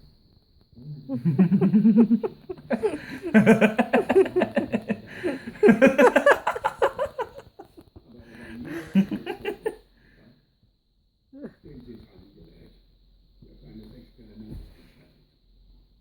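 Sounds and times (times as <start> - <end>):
person laughing hard: 1.1 - 7.8, 8.4 - 9.8.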